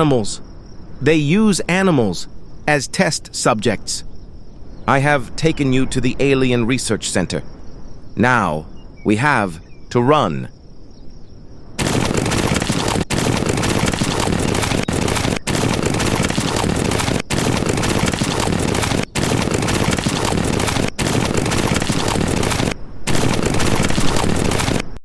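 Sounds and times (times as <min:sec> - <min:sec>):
cartoon rapid gunfire: 0:11.8 - 0:25.0.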